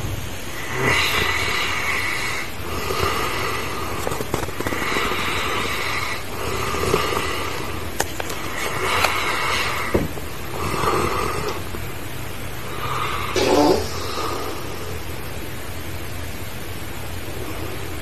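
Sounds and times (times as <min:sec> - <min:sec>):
dog snoring: 0:00.6 - 0:11.8, 0:12.6 - 0:15.1.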